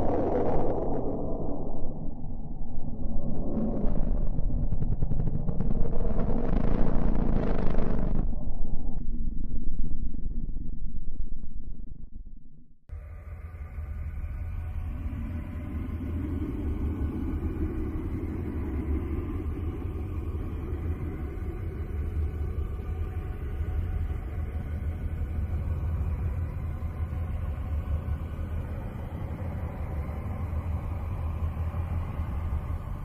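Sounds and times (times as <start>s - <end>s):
deep rumbling drone: 0.0s - 33.0s
faint sustained tones: 8.2s - 33.0s.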